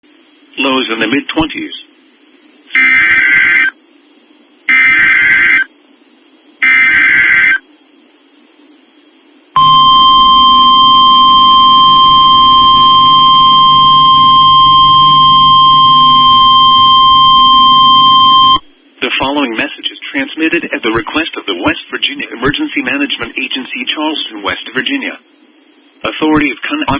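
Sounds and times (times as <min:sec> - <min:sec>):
digital data screech bursts: 0:02.7 - 0:03.8, 0:04.7 - 0:05.7, 0:06.6 - 0:07.6
single-pitch alarm tone: 0:02.7 - 0:03.8, 0:04.7 - 0:05.7, 0:06.6 - 0:07.6, 0:09.6 - 0:18.7.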